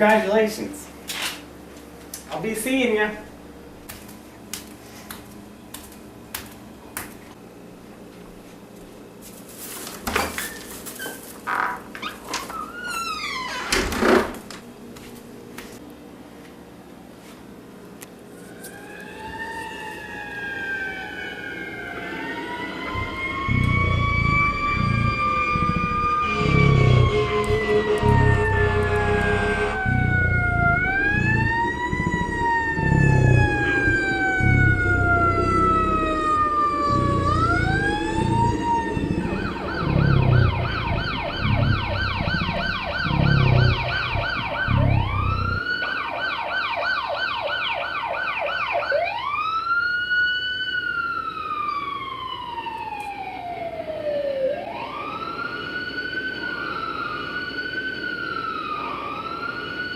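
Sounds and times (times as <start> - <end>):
emergency siren wailing and yelping: 18.4 - 59.9
low pulsing beat: 22.9 - 45.7.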